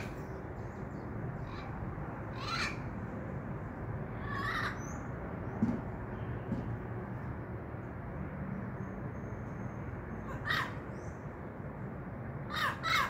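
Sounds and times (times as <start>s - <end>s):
parrots calling: 1.4s - 2.9s, 4.1s - 5.0s, 10.2s - 11.1s, 12.5s - 13.0s.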